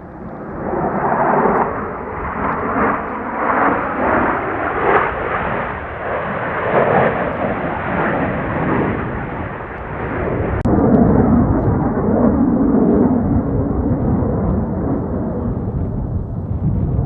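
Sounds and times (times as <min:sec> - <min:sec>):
jet engine noise: 0:00.0 - 0:17.0
low steady rumble: 0:10.6 - 0:17.0.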